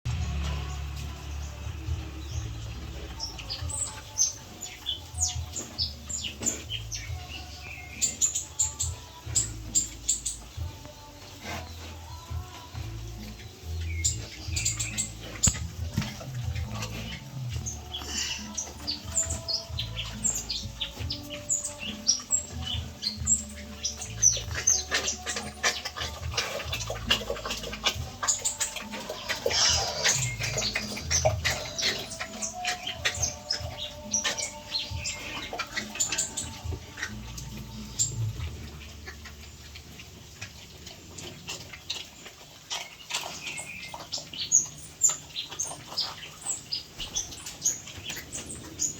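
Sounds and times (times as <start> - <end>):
piglets squeaking: 1.8 - 48.9
piglets squealing: 21.6 - 37.2.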